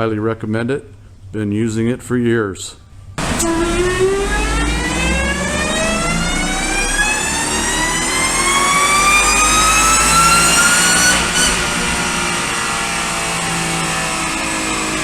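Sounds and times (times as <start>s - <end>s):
car engine revving: 3.2s - 15.0s
supercharger whine: 3.2s - 15.0s.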